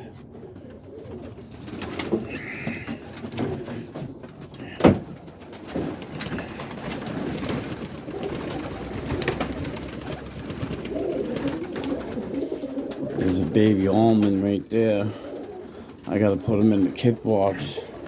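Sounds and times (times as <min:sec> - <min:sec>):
pigeons cooing: 0:00.0 - 0:18.0
clicks and rustles: 0:00.3 - 0:14.6.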